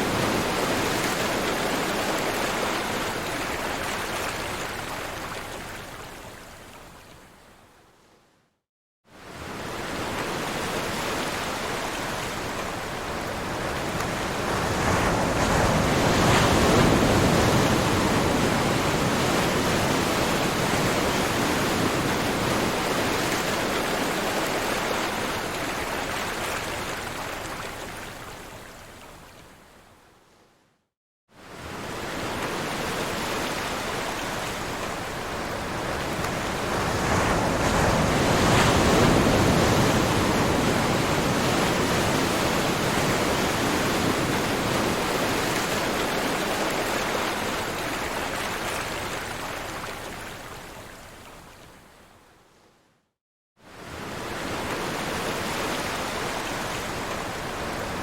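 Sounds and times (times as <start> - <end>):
ocean waves washing: 9.2 - 28.0, 31.4 - 50.6.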